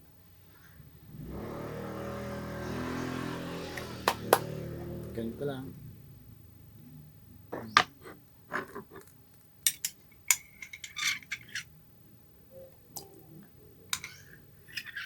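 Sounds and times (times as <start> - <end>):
metal spoon clinking against cup: 9.7 - 11.7, 13.9 - 15.0.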